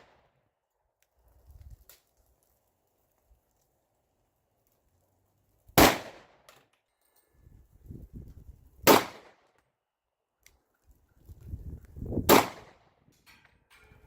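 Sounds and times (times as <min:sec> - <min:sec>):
pistol shots with echo: 0:05.8 - 0:06.4, 0:08.8 - 0:09.4, 0:12.3 - 0:12.8.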